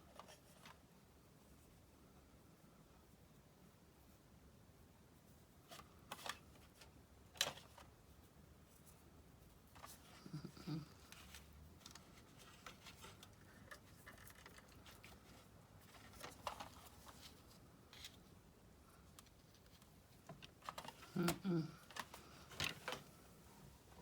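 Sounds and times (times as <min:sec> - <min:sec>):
craft materials clicking and rustling: 0:11.0 - 0:18.2, 0:19.1 - 0:23.2.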